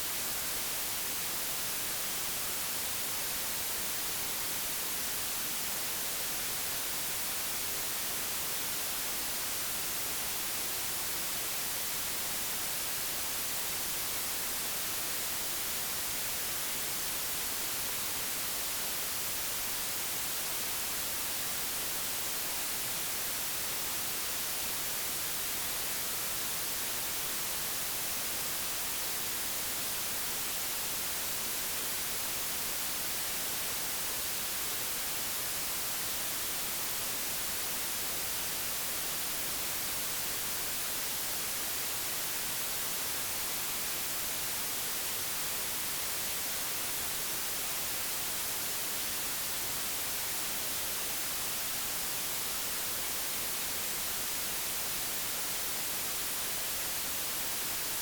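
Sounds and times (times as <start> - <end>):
white noise hiss: 0.0 - 58.0.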